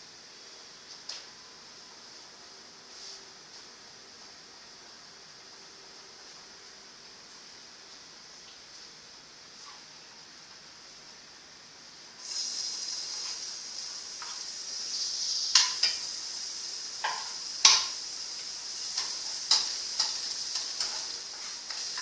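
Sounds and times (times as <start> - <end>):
food sizzling in a pan: 12.0 - 22.0.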